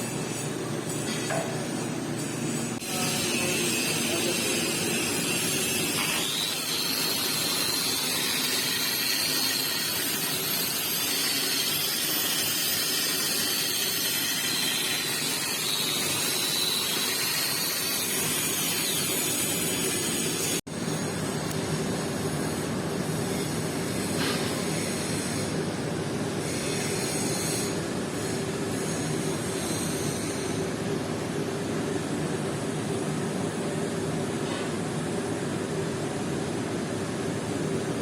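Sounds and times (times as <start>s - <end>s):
welding arc hissing: 0.0s - 21.3s.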